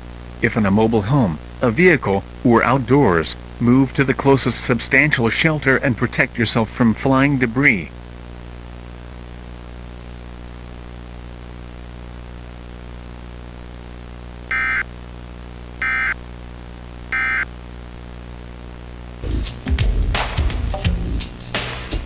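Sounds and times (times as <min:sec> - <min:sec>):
steady electronic hum: 0:00.0 - 0:22.0
screeching digital data tones: 0:14.5 - 0:14.8, 0:15.8 - 0:16.2, 0:17.2 - 0:17.4.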